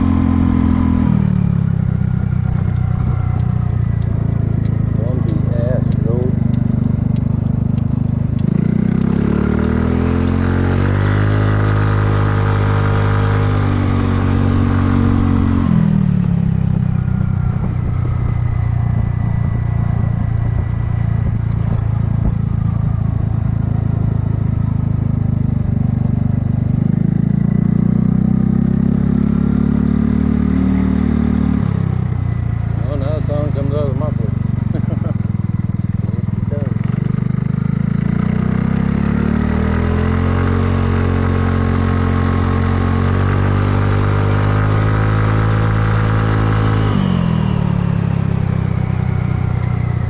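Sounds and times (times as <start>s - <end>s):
scooter engine running: 0.0s - 50.0s
wind noise: 13.6s - 24.8s.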